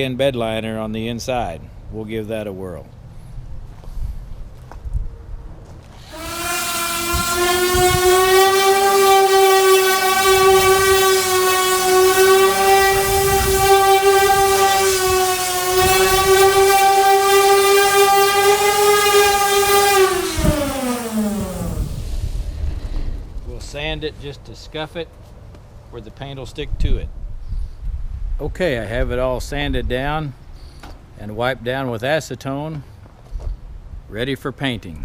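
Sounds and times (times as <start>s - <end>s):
electric sander whining: 5.8s - 24.9s.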